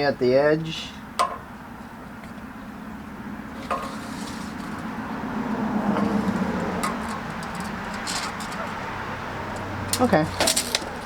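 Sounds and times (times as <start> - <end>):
low motor hum: 1.6 - 11.0.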